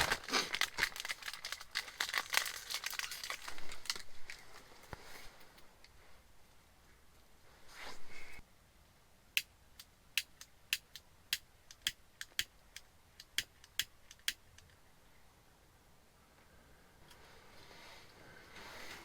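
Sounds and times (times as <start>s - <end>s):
sharp thin clicks: 9.4s - 14.8s.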